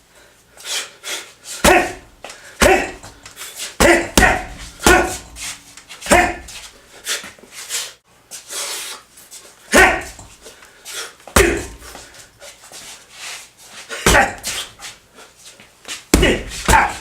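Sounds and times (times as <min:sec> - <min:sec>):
punches on a metal fridge: 0:01.6 - 0:03.2, 0:03.8 - 0:05.4, 0:06.1 - 0:06.5, 0:11.4 - 0:11.8, 0:14.0 - 0:14.6, 0:16.1 - 0:17.0.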